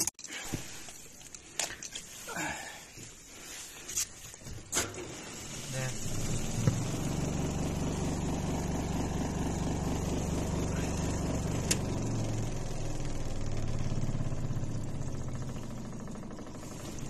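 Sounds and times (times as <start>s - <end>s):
washing machine spin motor humming: 4.8s - 17.0s.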